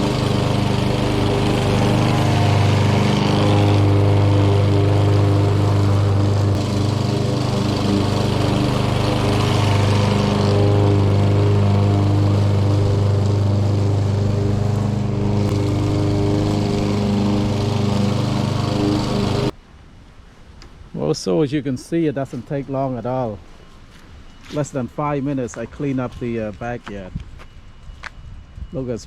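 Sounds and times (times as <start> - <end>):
lawn mower engine running: 0.0 - 19.6.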